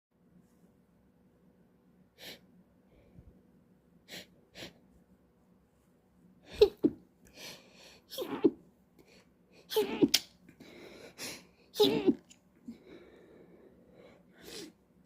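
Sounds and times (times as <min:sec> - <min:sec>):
woman breathing: 0:07.2 - 0:08.1, 0:10.6 - 0:11.8, 0:12.6 - 0:14.8
woman sneezing: 0:08.1 - 0:08.6, 0:09.7 - 0:10.2, 0:11.8 - 0:12.2.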